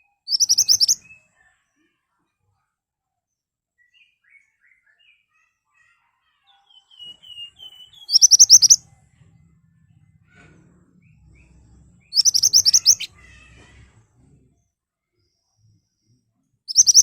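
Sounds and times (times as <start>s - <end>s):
bird singing: 0.0s - 1.4s, 6.5s - 13.6s, 15.2s - 17.0s.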